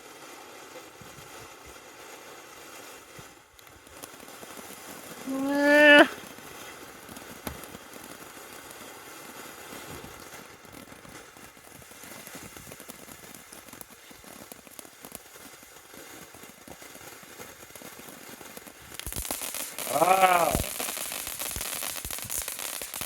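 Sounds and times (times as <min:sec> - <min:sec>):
firework fountain crackling: 0:00.0 - 0:23.0
firework hiss: 0:00.0 - 0:23.0.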